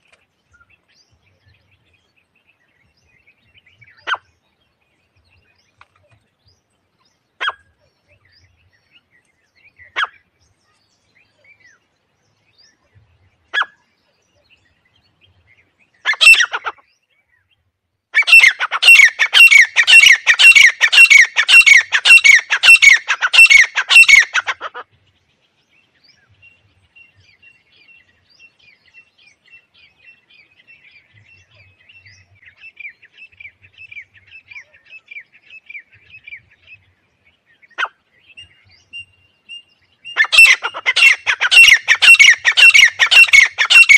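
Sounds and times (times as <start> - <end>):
francolin calling: 16.0 - 16.9, 18.2 - 24.8, 37.7 - 43.9.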